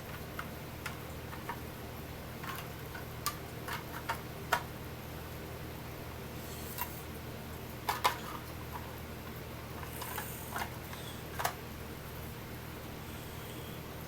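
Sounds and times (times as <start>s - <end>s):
plastic pieces clicking and tapping: 2.4s - 4.7s, 11.3s - 11.6s.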